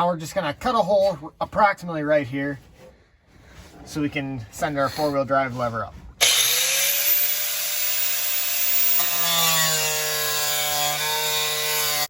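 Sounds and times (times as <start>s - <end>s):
angle grinder cutting sheet metal: 6.2s - 12.0s.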